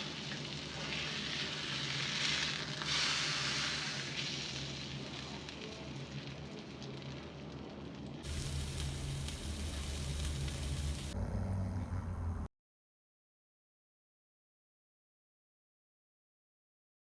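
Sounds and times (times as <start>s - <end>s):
fish sizzling in hot oil: 0.0s - 6.7s, 8.2s - 11.2s
low hum: 8.3s - 12.5s.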